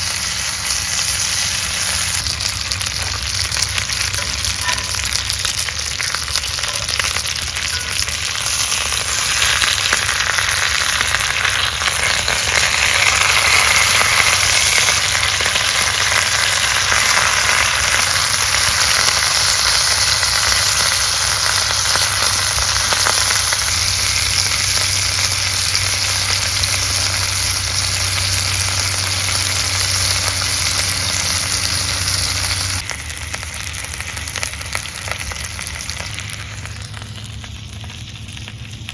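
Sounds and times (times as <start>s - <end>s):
chicken sizzling in skillet: 0.0s - 38.9s.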